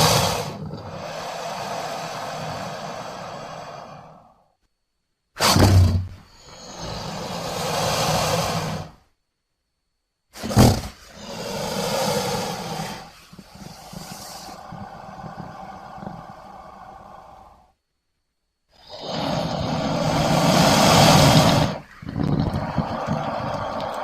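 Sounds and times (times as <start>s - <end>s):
monster roaring: 0.0s - 4.2s, 11.2s - 13.1s, 18.8s - 24.0s
monster growling: 0.0s - 4.3s, 10.6s - 17.7s, 18.8s - 24.0s.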